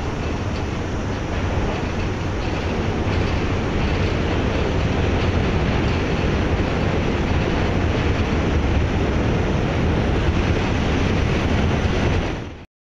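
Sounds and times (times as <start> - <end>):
subway train rumble and rattle: 0.0 - 12.7.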